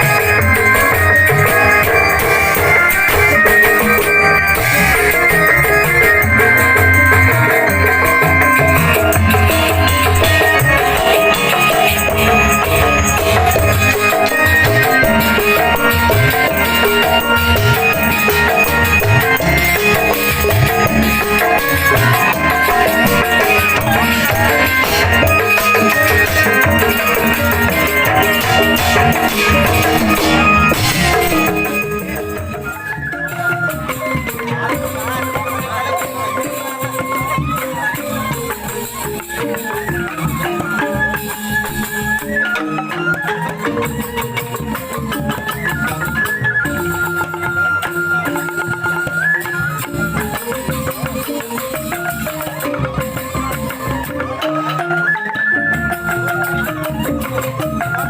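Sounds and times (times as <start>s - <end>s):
steady drum beat: 0.0s - 33.4s
bamboo gamelan notes: 0.0s - 58.0s.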